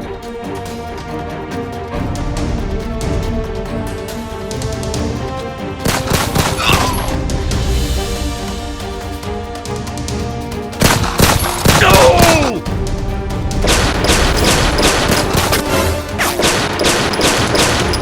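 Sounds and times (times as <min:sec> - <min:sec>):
background music: 0:00.0 - 0:18.0
rapid gunfire: 0:05.8 - 0:07.0, 0:10.8 - 0:12.5, 0:13.6 - 0:18.0.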